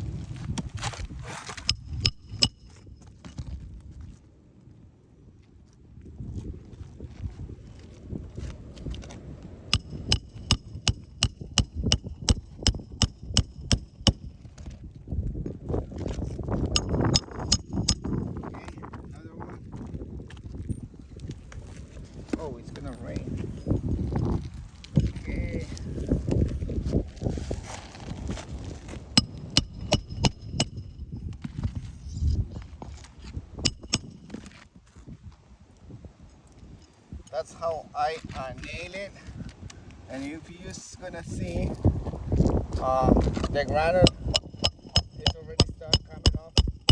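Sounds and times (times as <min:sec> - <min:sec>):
scraping handling noise: 0:00.3 - 0:03.6
hammer striking nails: 0:01.6 - 0:02.8, 0:09.8 - 0:14.3, 0:16.8 - 0:18.2, 0:29.2 - 0:31.0, 0:33.7 - 0:34.5, 0:43.4 - 0:46.9.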